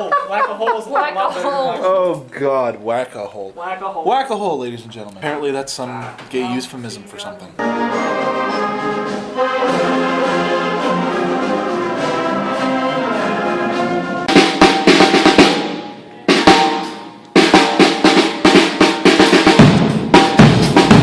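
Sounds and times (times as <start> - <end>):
brass and wind chords: 7.6 - 14.6
drums with fast snare hits: 14.2 - 21.0.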